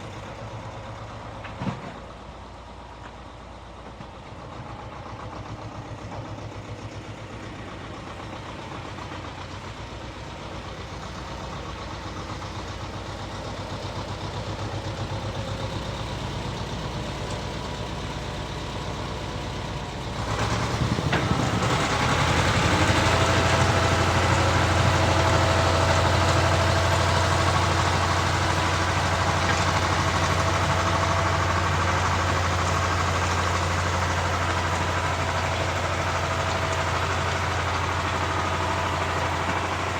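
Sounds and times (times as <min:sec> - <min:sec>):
rotary tiller engine running: 0:11.2 - 0:39.9.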